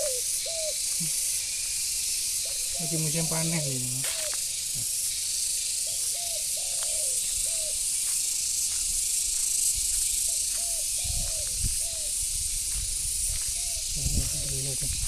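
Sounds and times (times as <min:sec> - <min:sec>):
dove cooing: 0:00.0 - 0:01.2, 0:02.4 - 0:04.9, 0:05.8 - 0:07.8, 0:10.6 - 0:12.2
steady high hiss: 0:00.0 - 0:15.0.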